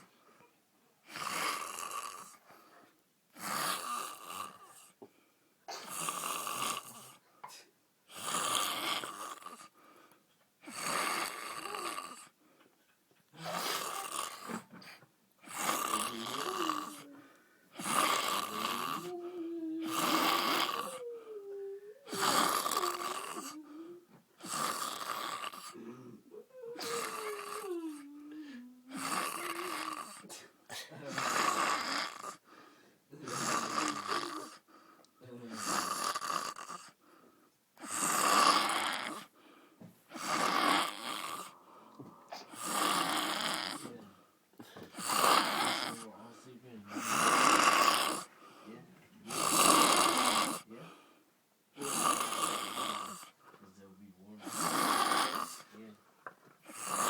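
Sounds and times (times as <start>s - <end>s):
man snoring loudly: 1.1s - 2.3s, 3.4s - 4.6s, 5.8s - 7.1s, 8.1s - 9.6s, 10.7s - 12.2s, 13.4s - 14.6s, 15.5s - 17.2s, 17.8s - 30.2s, 31.1s - 32.4s, 33.2s - 34.6s, 35.5s - 37.0s, 37.8s - 39.3s, 40.2s - 41.6s, 42.5s - 44.0s, 45.0s - 46.1s, 46.9s - 48.3s, 49.3s - 50.7s, 51.8s - 53.3s, 54.3s - 55.8s, 56.7s - 57.0s.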